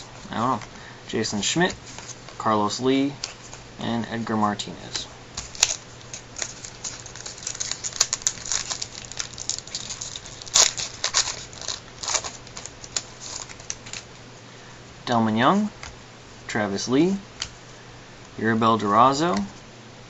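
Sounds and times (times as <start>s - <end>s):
card packaging crinkling: 5.4s - 14.2s.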